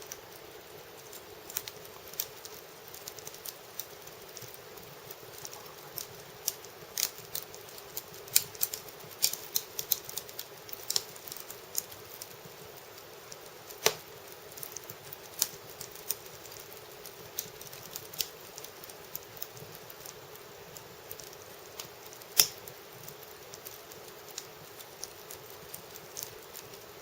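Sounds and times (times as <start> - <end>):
faint steady hum: 0.0 - 27.0
firewood crackling and popping: 0.0 - 27.0.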